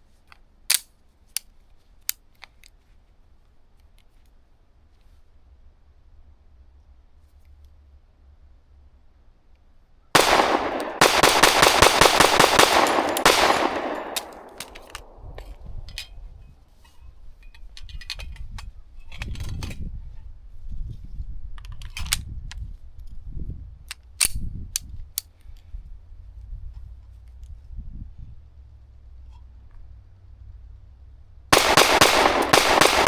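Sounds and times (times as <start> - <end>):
pistol rapid fire: 10.2 - 15.3, 31.5 - 33.0.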